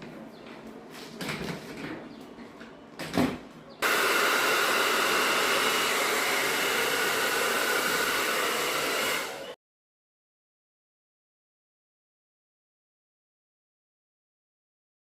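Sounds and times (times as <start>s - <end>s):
hair dryer running: 3.8s - 9.6s.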